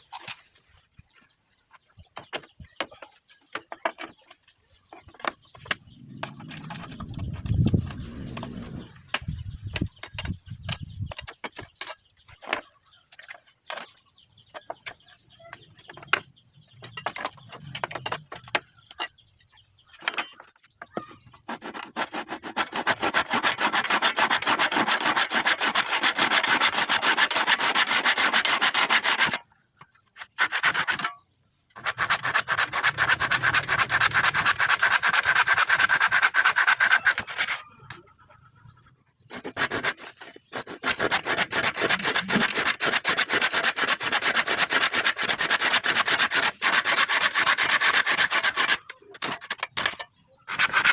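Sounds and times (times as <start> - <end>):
wood rubbed by hand: 21.4 - 29.4, 30.2 - 37.7, 39.3 - 49.9, 50.5 - 50.9.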